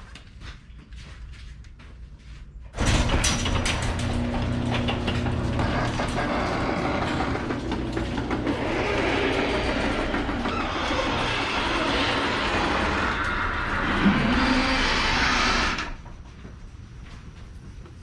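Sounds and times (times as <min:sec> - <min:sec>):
garage door rolling open: 0:02.8 - 0:16.2.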